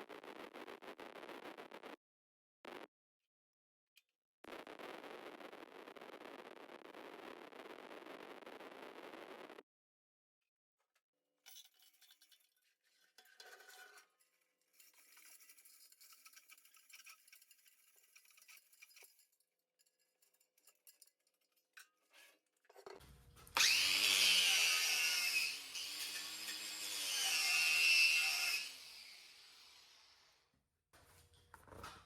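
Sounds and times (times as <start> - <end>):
electric grinder whining: 23.4 - 30.4.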